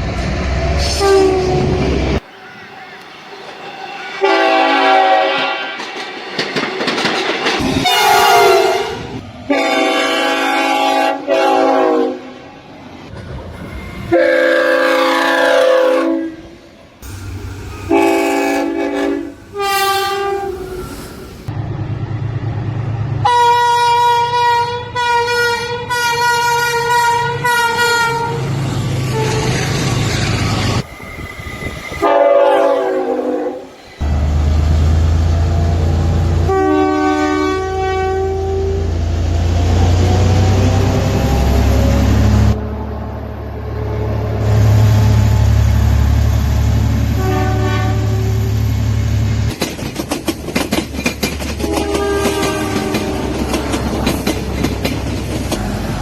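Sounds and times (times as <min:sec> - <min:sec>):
low rumble of passing train: 0:00.0 - 0:56.0
locomotive air horn blasts: 0:04.2 - 0:05.8, 0:07.8 - 0:12.3, 0:14.1 - 0:20.9, 0:23.2 - 0:28.4, 0:32.0 - 0:33.7, 0:36.4 - 0:38.8, 0:47.1 - 0:48.3, 0:51.6 - 0:53.4.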